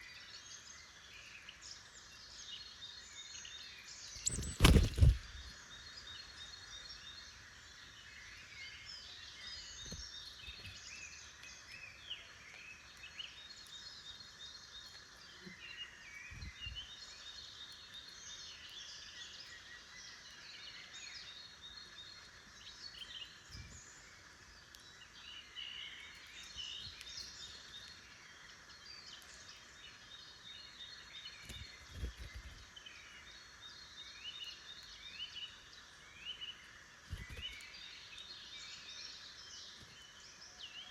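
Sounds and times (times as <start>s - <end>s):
songbirds chirping and singing: 0.0s - 40.9s.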